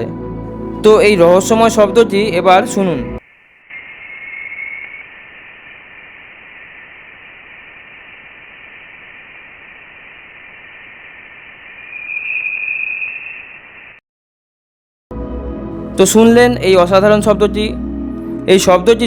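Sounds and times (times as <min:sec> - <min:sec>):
steady hiss: 0:03.2 - 0:14.0.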